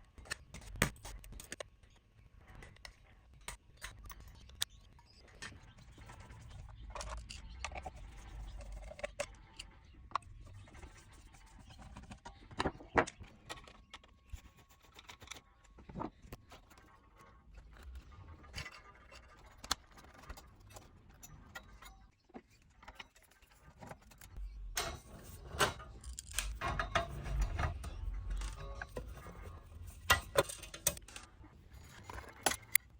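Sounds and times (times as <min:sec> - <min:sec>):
tools and screws clinking: 0:17.7 - 0:32.9
low rumble: 0:24.4 - 0:30.4.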